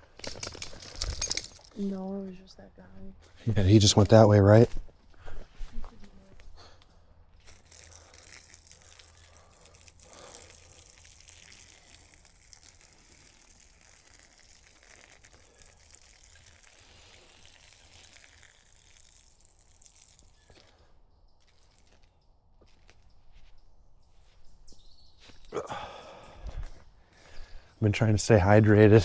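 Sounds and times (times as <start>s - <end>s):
person urinating onto ground: 7.4s - 22.1s.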